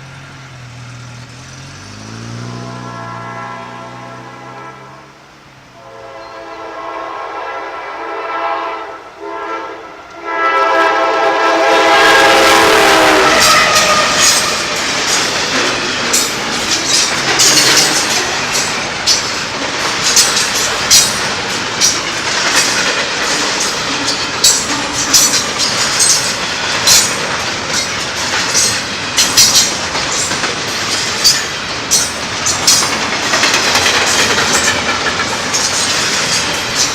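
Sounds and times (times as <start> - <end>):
train rumbling past: 0.0 - 36.9
locomotive air horn: 2.4 - 15.0
wheels clicking over rail joints: 12.2 - 36.9.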